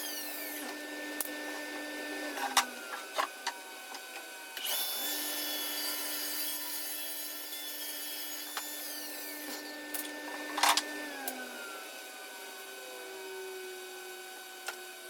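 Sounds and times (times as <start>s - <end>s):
saw cutting wood: 0.0s - 11.9s
table saw motor hum: 0.0s - 15.0s.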